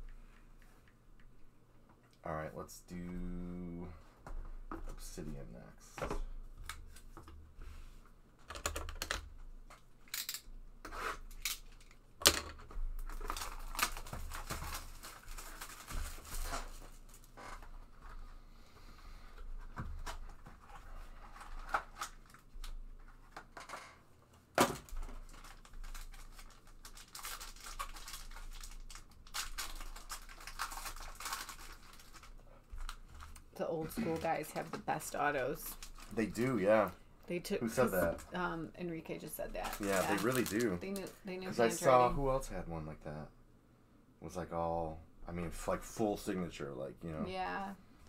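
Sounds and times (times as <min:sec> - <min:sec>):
cardboard and cards rustling: 0:10.9 - 0:18.3, 0:19.4 - 0:36.9, 0:39.4 - 0:42.0
wrapping tearing and crinkling: 0:12.9 - 0:18.0, 0:20.0 - 0:23.7, 0:24.6 - 0:34.7, 0:35.4 - 0:36.9, 0:39.5 - 0:41.2.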